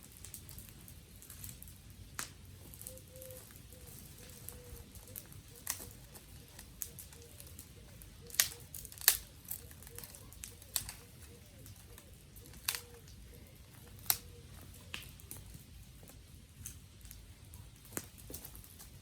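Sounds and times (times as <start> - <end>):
dry twigs cracking: 0.0 - 19.0
faint steady crackle: 0.0 - 19.0.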